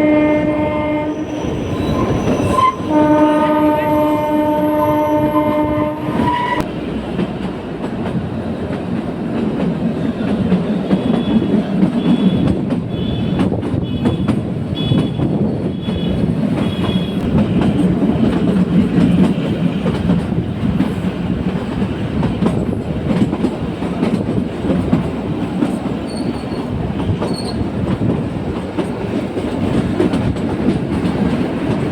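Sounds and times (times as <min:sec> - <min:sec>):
train horn: 0:00.0 - 0:06.7, 0:11.0 - 0:17.4
high wheel squeals: 0:01.0 - 0:03.2, 0:26.1 - 0:27.7
train wheels clattering over rail joints: 0:06.9 - 0:31.9.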